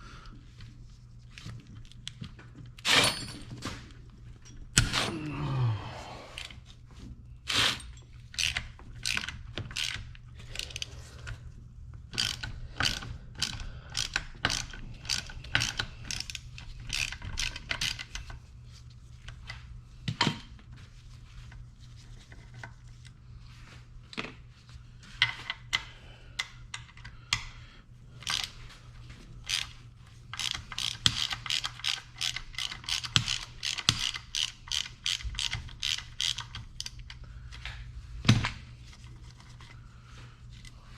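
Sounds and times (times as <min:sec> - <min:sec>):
steady low hum: 0:00.0 - 0:40.9
ratchet wrench clicking: 0:08.4 - 0:10.0, 0:12.2 - 0:18.3, 0:29.4 - 0:29.7, 0:30.3 - 0:37.1.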